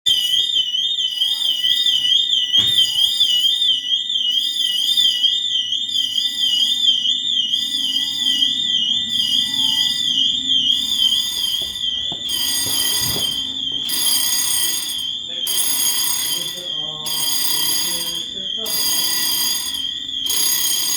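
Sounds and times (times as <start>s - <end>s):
electronic siren warbling: 0.1s - 20.9s
high ringing tones: 7.7s - 20.9s.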